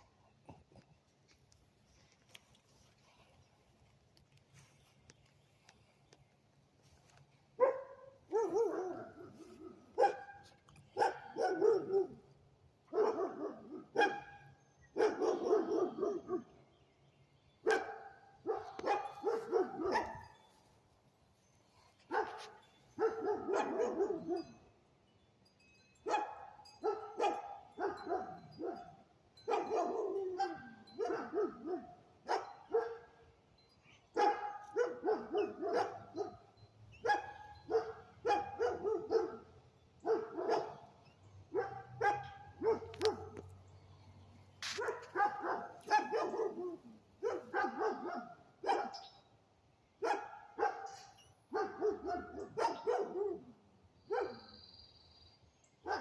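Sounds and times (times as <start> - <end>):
dog barking: 7.6 - 12.2, 12.9 - 16.5, 17.6 - 20.4, 22.1 - 24.5, 26.1 - 28.9, 29.5 - 33.1, 34.2 - 36.4, 37.0 - 40.8, 41.5 - 43.5, 44.6 - 49.1, 50.0 - 53.5, 54.1 - 54.5.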